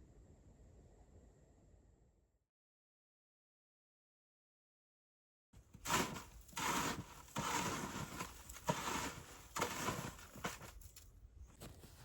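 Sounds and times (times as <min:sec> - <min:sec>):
footsteps crunching in snow: 0:05.6 - 0:12.0.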